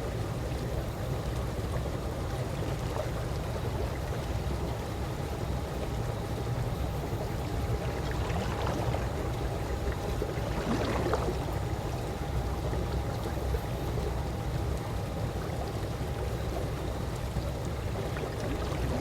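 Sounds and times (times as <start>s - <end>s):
faint steady hum: 0.0s - 19.0s
pool water lapping: 0.0s - 19.0s
small water splashes: 7.1s - 19.0s.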